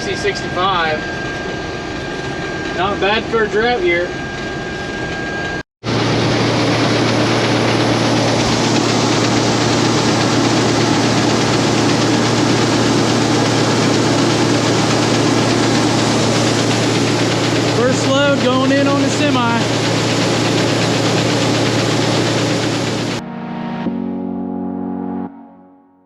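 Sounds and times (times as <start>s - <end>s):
combine harvester engine running: 0.0s - 24.0s.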